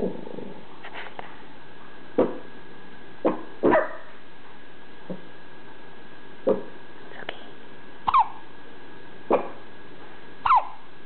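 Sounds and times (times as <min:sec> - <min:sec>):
baby hiccuping: 0:08.1 - 0:08.4, 0:10.5 - 0:10.8
baby voice squeak: 0:10.5 - 0:10.8.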